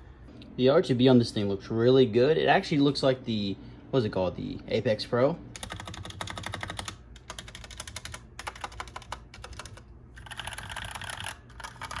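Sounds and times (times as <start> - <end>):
mechanical keyboard typing: 5.6 - 12.0.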